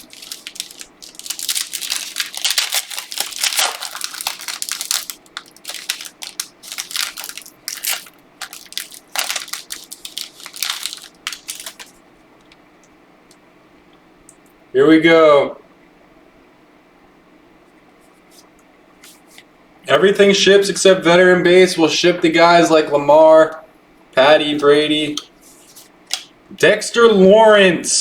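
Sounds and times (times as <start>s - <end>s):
plastic wrapping crinkling: 0.0s - 12.0s.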